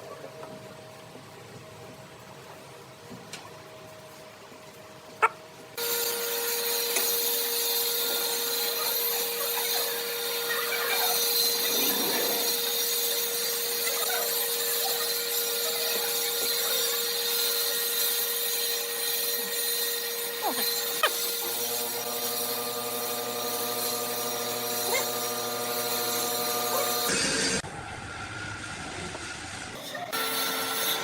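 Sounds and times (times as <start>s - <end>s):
power tool cutting wood: 5.8s - 27.6s, 29.6s - 31.0s.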